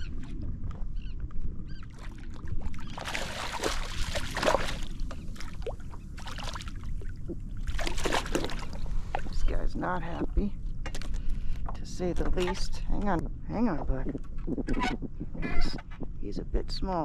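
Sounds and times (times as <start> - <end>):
fish splashing in water: 1.7 - 9.3.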